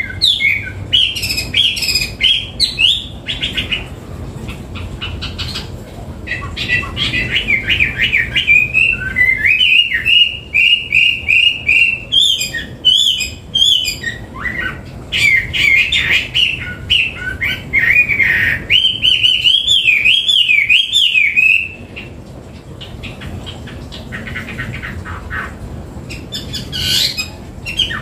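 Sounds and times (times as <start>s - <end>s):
songbird whistling song: 0.0s - 3.9s, 6.3s - 22.1s, 26.1s - 28.0s.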